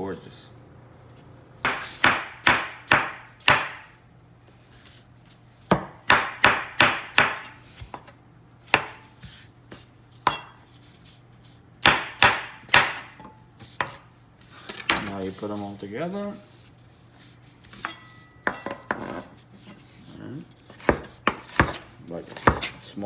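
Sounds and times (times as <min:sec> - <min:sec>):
knife chopping on cutting board: 0:01.6 - 0:04.0, 0:05.7 - 0:10.6, 0:11.8 - 0:14.1, 0:20.6 - 0:22.8.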